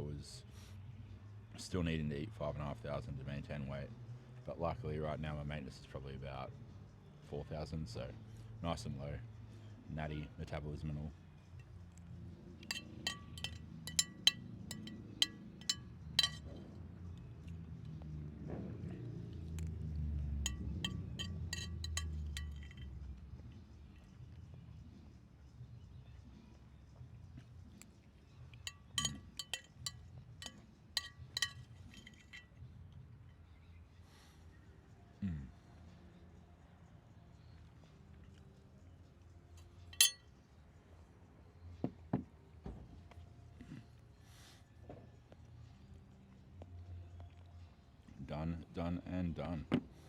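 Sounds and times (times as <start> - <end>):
cutlery clinking against a dish: 12.6 - 16.7, 20.4 - 22.9, 28.6 - 32.6, 39.9 - 40.2.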